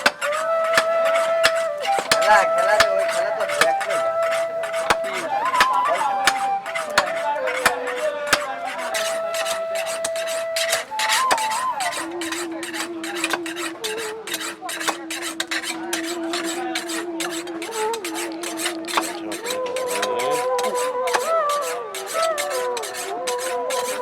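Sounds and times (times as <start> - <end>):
hand file rasping on steel: 0.0 - 24.0.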